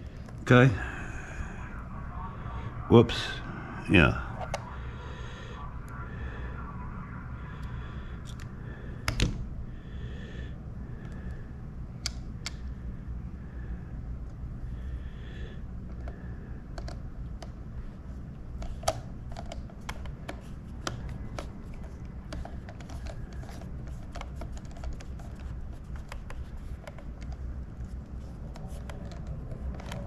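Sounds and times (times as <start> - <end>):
steady low hum: 0.0 - 30.0
plastic parts clicking: 18.6 - 27.4, 28.5 - 30.0.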